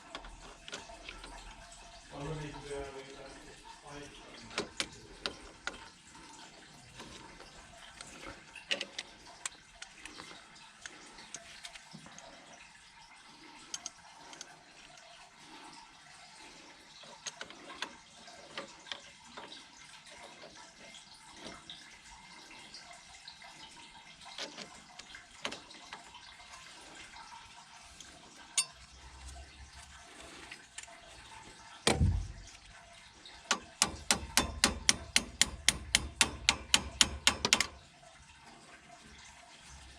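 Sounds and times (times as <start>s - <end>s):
water running: 0.0s - 39.9s
heavy thump: 31.9s - 32.4s
clicks and knocks: 31.9s - 32.7s, 33.5s - 37.8s.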